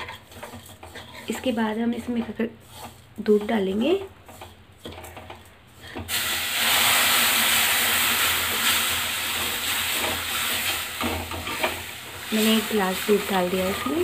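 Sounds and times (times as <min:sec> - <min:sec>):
milk hissing in hot pan: 0:05.8 - 0:14.0.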